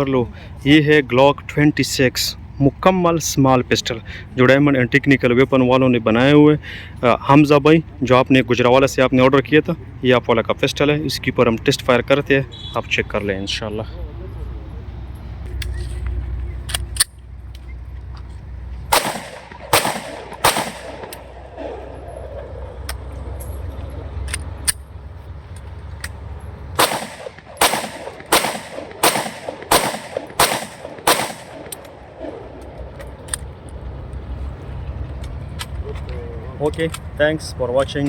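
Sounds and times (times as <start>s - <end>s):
pistol shots: 18.9s - 23.0s, 26.8s - 32.9s.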